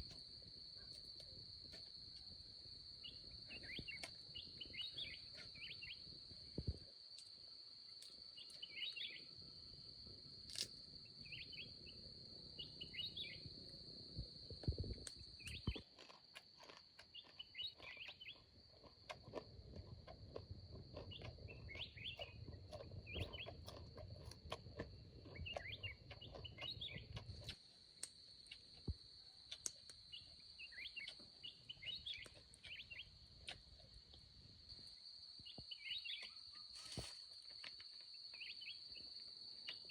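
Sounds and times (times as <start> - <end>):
bird chirps: 3.0 - 6.0, 8.4 - 9.2, 12.6 - 13.4, 17.1 - 18.4, 21.1 - 22.4, 23.1 - 23.5, 25.4 - 27.2, 30.1 - 33.1, 35.4 - 36.7, 38.4 - 38.8.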